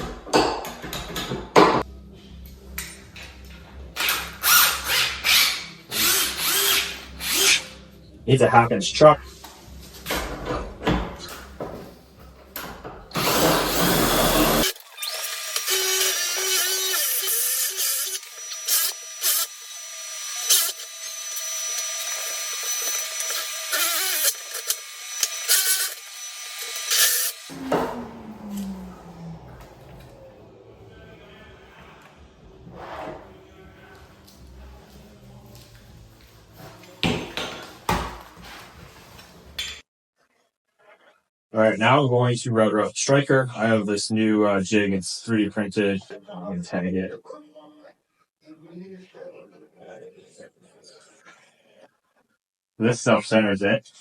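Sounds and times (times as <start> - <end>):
drill boring into wooden door: 4.0 - 7.6, 13.1 - 28.0
low rumbling: 27.5 - 33.8.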